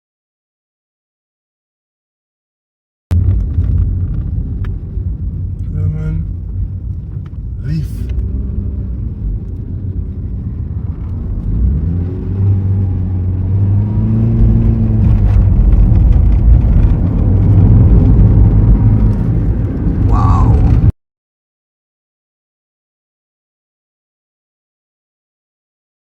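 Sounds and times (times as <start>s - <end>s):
car engine accelerating: 3.1s - 20.9s.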